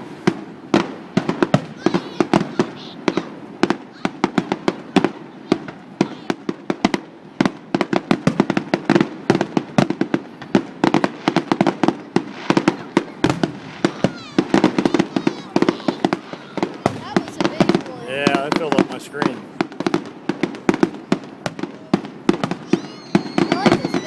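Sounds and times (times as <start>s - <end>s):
fireworks bangs and crackling pops: 0.0s - 24.0s.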